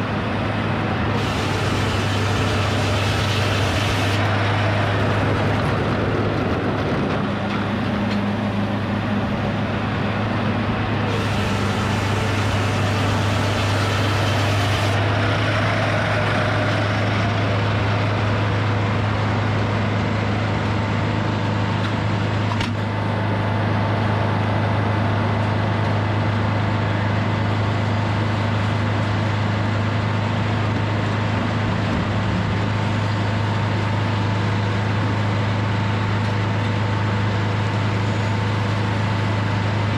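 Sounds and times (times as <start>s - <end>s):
sawmill engine humming: 0.0s - 39.9s.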